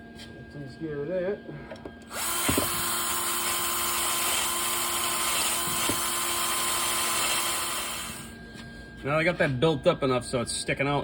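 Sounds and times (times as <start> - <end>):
grinder knocking on metal: 2.1 - 8.2
power grinder whining: 2.1 - 8.3.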